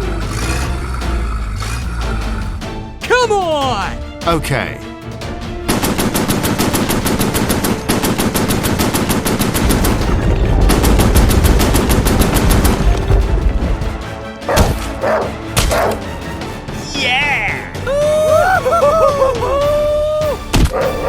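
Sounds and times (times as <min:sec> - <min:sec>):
automatic gunfire: 0:05.7 - 0:10.1
deep rumble: 0:09.6 - 0:14.2.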